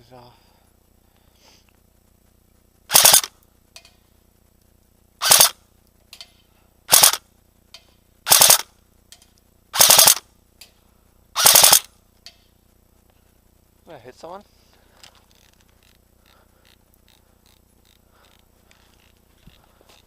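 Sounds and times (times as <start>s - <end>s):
airsoft gun rapid shots: 2.9s - 3.3s, 5.2s - 5.6s, 6.9s - 7.2s, 8.3s - 8.7s, 9.8s - 10.2s, 11.4s - 11.9s.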